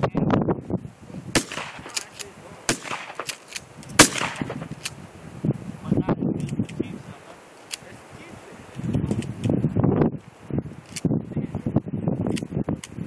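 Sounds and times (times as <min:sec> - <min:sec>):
shotgun shots: 0:01.3 - 0:04.8.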